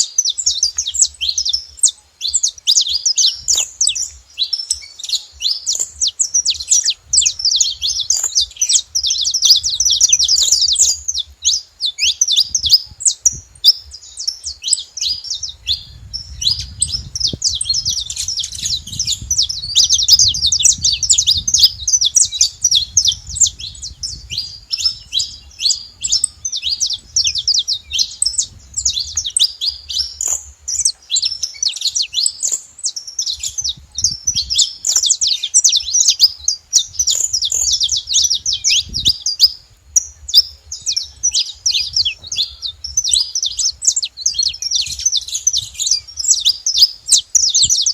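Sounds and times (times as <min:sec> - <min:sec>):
finches chirping: 0:00.0 - 0:47.9.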